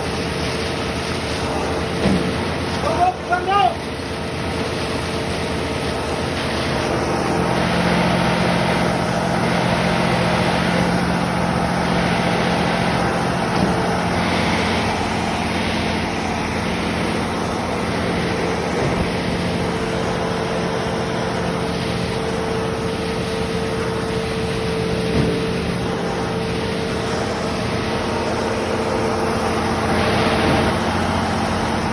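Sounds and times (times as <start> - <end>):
concrete pump engine humming: 0.0 - 31.9.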